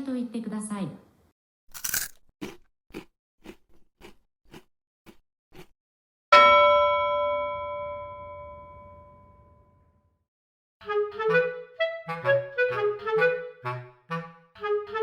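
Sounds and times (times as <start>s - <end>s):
bell chime: 6.4s - 9.8s.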